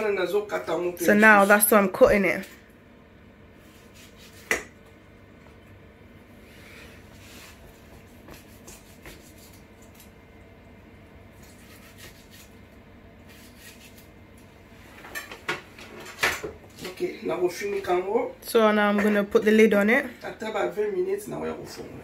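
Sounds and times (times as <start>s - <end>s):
steady low hum: 0.0s - 22.0s
knife cutting on a board: 3.6s - 4.7s, 7.4s - 9.6s, 11.4s - 12.6s, 13.3s - 14.1s.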